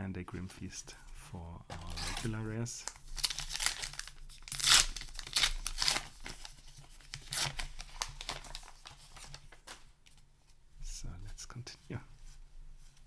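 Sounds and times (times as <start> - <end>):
paper wrapper tearing and crinkling: 1.7 - 9.8.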